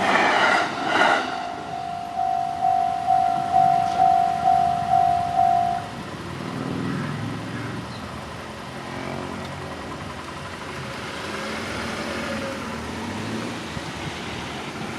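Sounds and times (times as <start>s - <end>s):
road vehicle engines: 0.0s - 14.9s
traffic noise: 0.0s - 14.9s
railway crossing bell ringing: 1.2s - 6.1s.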